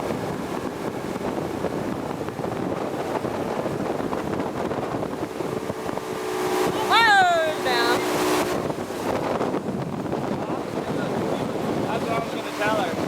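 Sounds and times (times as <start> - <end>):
motorboat engine: 0.0 - 13.0
rushing water: 0.0 - 13.0
wind buffeting microphone: 0.0 - 13.0.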